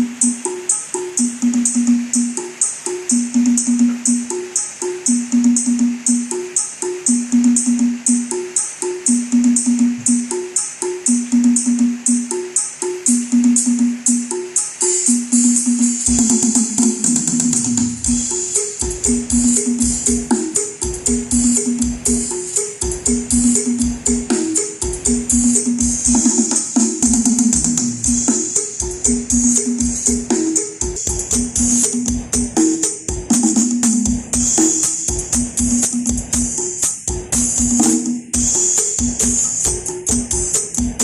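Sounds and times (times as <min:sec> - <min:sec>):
electronic dance music: 0:00.0 - 0:41.0
heavy pulsing bass: 0:27.0 - 0:33.4.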